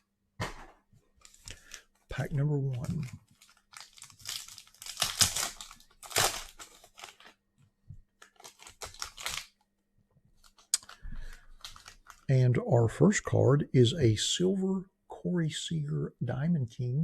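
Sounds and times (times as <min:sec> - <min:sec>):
foil pack tearing and crinkling: 0:02.8 - 0:07.4, 0:08.2 - 0:09.6, 0:10.5 - 0:12.3.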